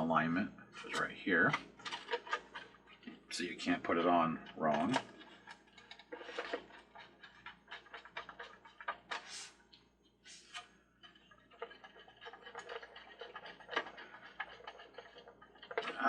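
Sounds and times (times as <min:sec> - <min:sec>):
plastic scraping rubs: 0:00.8 - 0:16.0
plastic parts clicking: 0:04.6 - 0:09.3.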